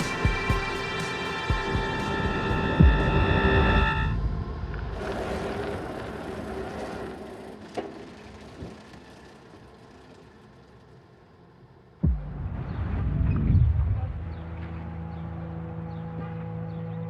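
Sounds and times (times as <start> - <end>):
multi-tone horn chord: 0.0 - 4.3.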